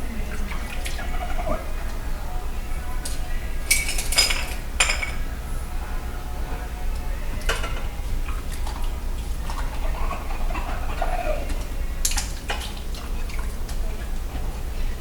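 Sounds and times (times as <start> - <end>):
dishes and cutlery clinking: 3.0 - 5.2, 7.4 - 12.8
water dripping and splashing: 8.3 - 14.5.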